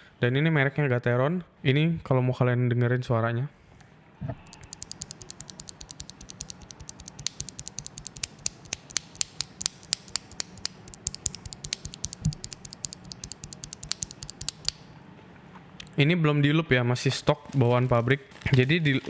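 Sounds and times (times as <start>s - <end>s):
keyboard switch clicking: 4.4s - 14.9s.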